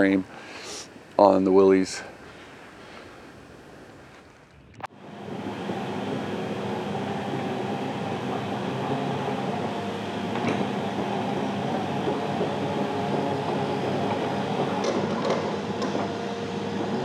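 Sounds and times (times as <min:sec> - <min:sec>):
diesel engine running: 0:04.9 - 0:17.0.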